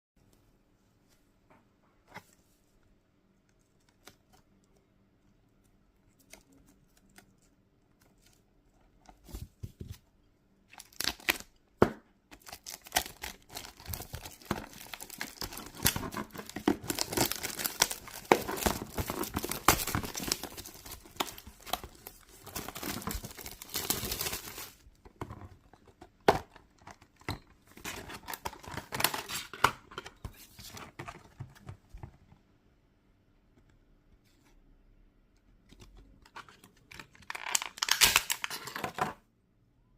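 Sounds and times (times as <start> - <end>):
packaging tearing and crinkling: 10.7 - 11.5, 12.4 - 24.8, 37.0 - 38.7.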